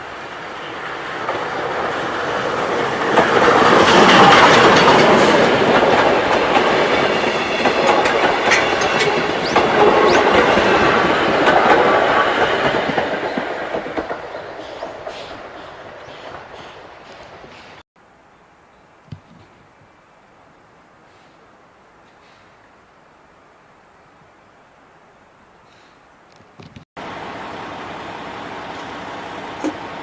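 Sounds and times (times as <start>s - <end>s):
steam train passing: 0.0s - 17.8s, 27.0s - 30.0s
wheels clattering over rail joints: 1.2s - 15.4s.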